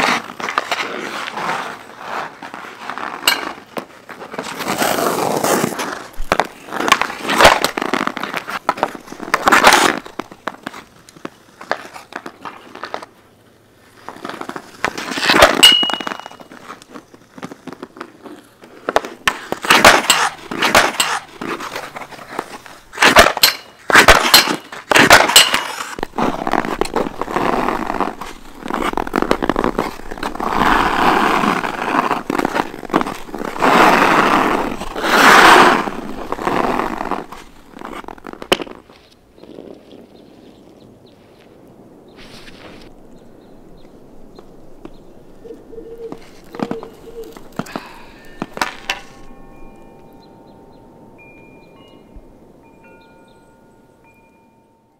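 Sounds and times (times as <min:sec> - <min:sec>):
skates scraping on ice: 0:00.0 - 0:42.9, 0:46.1 - 0:49.3
stick and puck clicks: 0:05.6 - 0:13.1, 0:14.1 - 0:39.8, 0:46.1 - 0:49.4.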